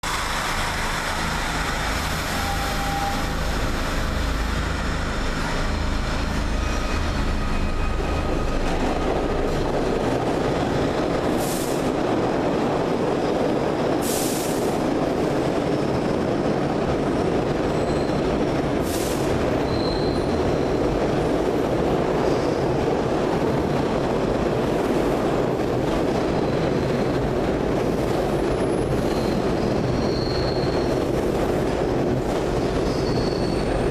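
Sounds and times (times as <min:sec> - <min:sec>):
subway train rumbling: 0:00.0 - 0:33.9
high-pitched wheel squeals: 0:02.2 - 0:03.6, 0:19.6 - 0:20.4, 0:29.1 - 0:31.1, 0:32.8 - 0:33.9.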